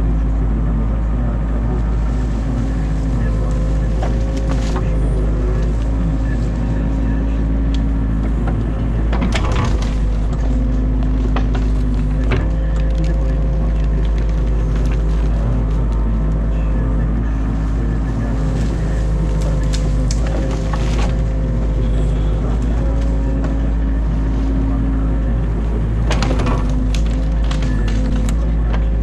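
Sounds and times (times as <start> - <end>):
excavator diesel engine: 0.0 - 29.0
branches snapping: 2.2 - 6.4, 7.7 - 16.5, 17.6 - 24.7, 25.8 - 28.9.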